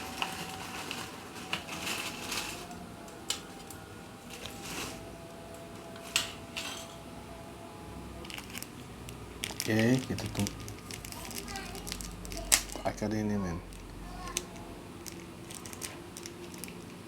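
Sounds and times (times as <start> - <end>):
food containers clattering: 0.0 - 5.1, 5.8 - 7.0.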